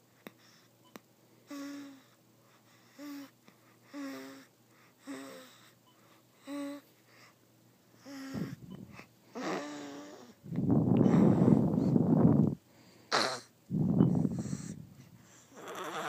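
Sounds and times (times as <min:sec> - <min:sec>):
baby snoring: 0:01.5 - 0:02.1, 0:02.8 - 0:05.7, 0:06.4 - 0:06.8, 0:08.0 - 0:10.4, 0:13.1 - 0:16.0.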